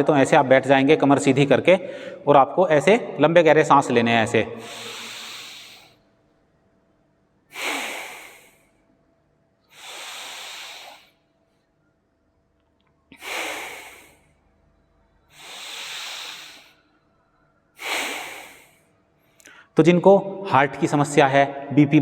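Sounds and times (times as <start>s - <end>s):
man breathing deeply: 1.8s - 2.3s, 4.5s - 6.1s, 7.5s - 8.9s, 9.7s - 11.4s, 13.1s - 14.6s, 15.2s - 19.8s.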